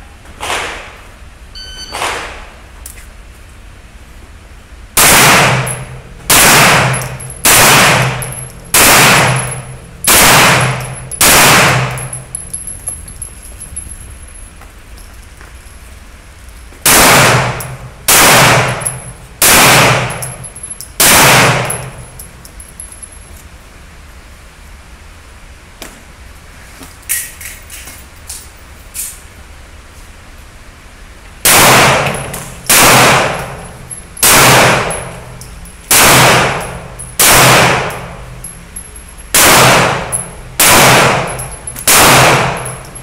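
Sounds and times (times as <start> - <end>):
pistol shots: 0.4 - 1.0, 1.9 - 2.6, 5.0 - 12.2, 16.8 - 22.1, 31.4 - 38.2, 39.3 - 42.9
shot timer beep: 1.5 - 2.1.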